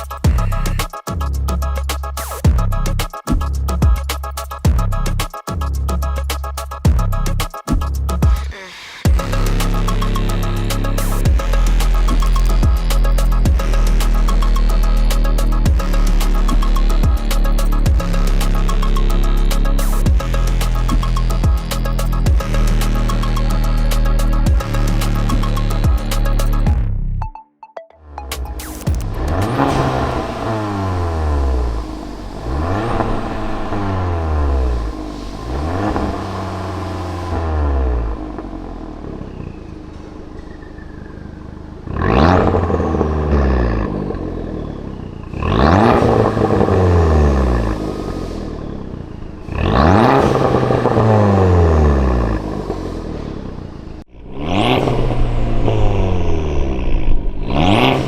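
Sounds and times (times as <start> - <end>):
car engine revving: 0.0 - 27.2, 28.0 - 58.0.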